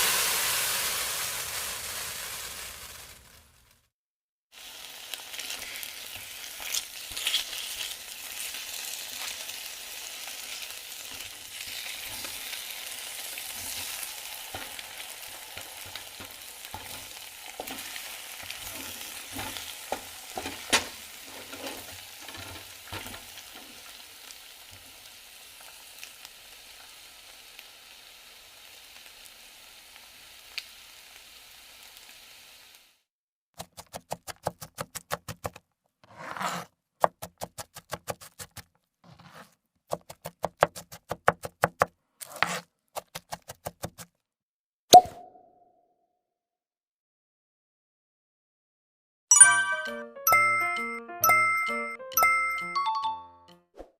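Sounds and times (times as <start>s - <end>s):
food sizzling in a frying pan: 0.0s - 3.8s, 4.5s - 33.1s.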